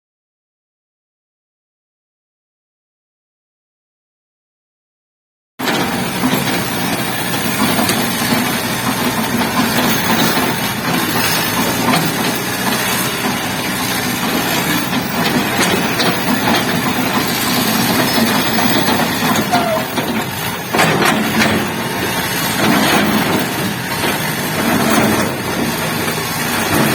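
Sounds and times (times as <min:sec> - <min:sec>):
excavator diesel engine running: 0:05.6 - 0:26.9.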